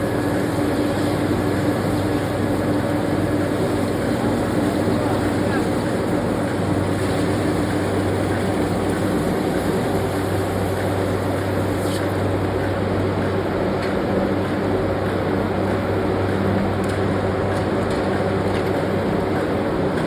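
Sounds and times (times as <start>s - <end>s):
machinery drone: 0.0s - 11.7s.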